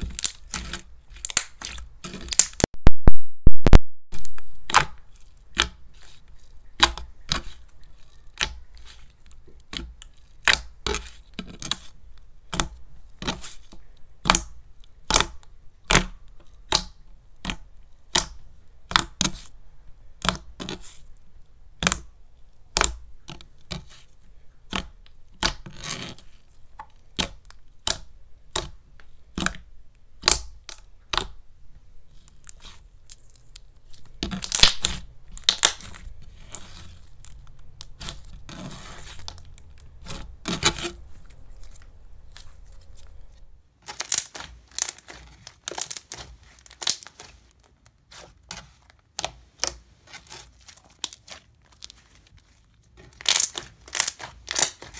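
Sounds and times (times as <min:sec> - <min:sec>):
slime clicking and popping: 0:02.2 - 0:05.8, 0:29.4 - 0:31.4, 0:34.2 - 0:36.0, 0:43.9 - 0:47.2, 0:53.1 - 0:54.9.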